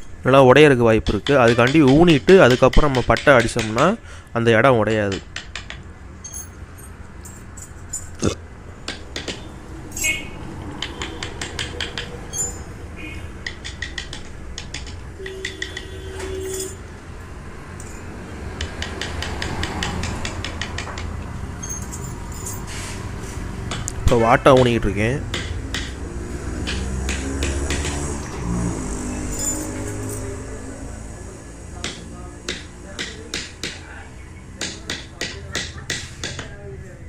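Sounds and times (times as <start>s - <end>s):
mallet tapping chisel into wood: 1.0s - 4.0s, 5.1s - 5.9s, 8.8s - 9.5s, 10.6s - 12.2s, 13.4s - 16.0s, 18.6s - 21.2s, 25.3s - 28.1s, 31.8s - 33.8s, 34.6s - 36.5s.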